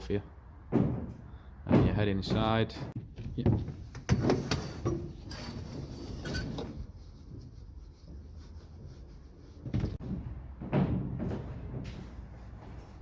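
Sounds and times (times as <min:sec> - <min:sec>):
knocks and thumps: 0:00.5 - 0:05.2, 0:09.6 - 0:12.3.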